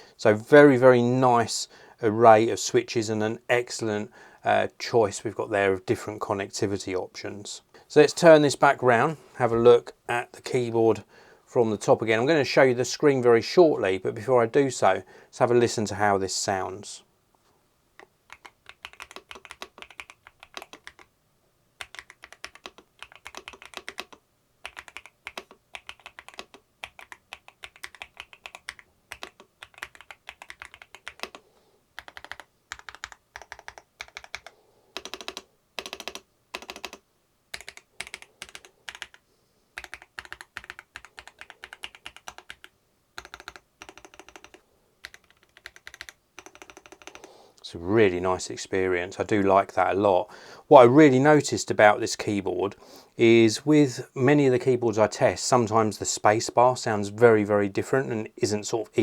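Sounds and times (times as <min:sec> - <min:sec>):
mechanical keyboard typing: 0:18.3 - 0:21.1, 0:21.8 - 0:31.4, 0:32.0 - 0:39.2, 0:39.8 - 0:47.3.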